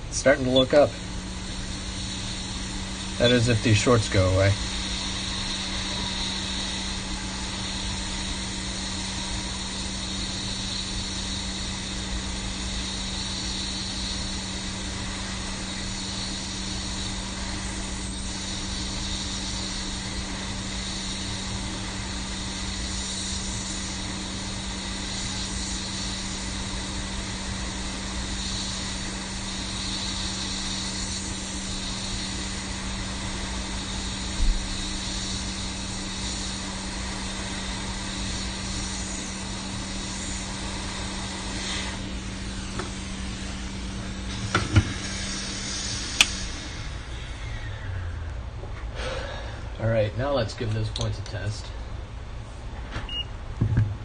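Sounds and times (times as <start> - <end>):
low hum: 0.0 - 50.2
hot air blowing: 0.0 - 53.2.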